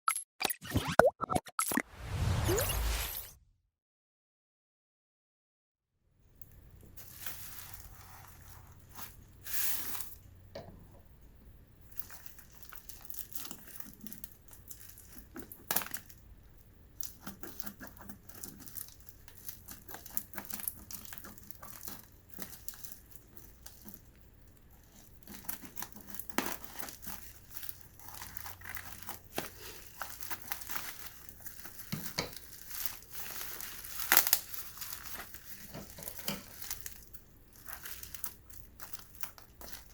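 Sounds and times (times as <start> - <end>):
packaging crinkling and rustling: 7.0 - 10.2, 11.9 - 16.2, 17.0 - 39.9.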